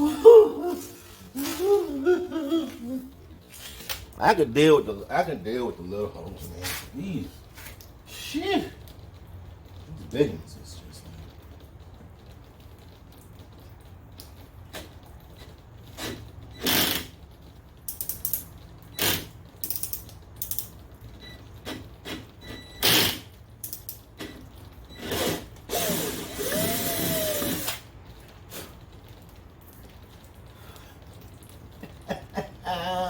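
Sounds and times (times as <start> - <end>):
cordless drill drilling: 25.0 - 27.8.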